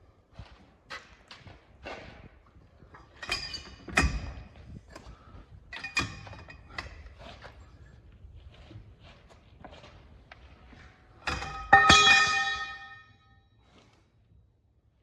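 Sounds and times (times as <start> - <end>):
metal knocks and clanks: 2.9 - 5.1, 11.2 - 13.2.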